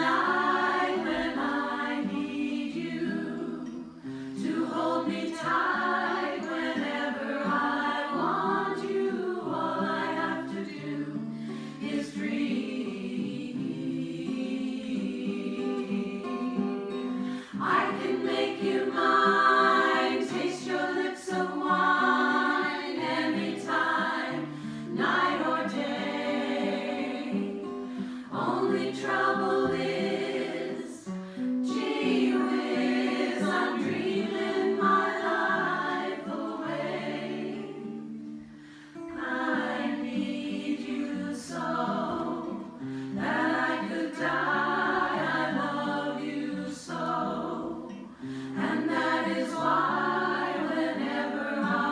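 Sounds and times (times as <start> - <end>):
vocal group singing in harmony: 0.0 - 51.9.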